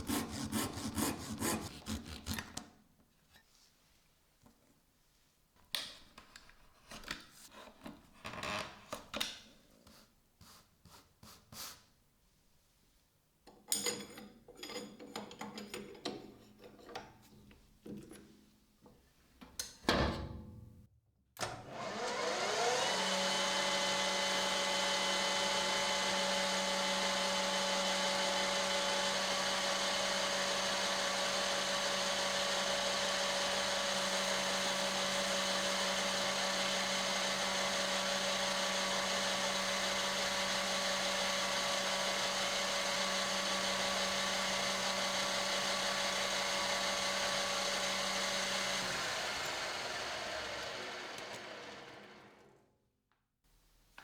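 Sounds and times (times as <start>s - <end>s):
power tool motor whining: 0.0s - 2.5s, 21.6s - 52.4s.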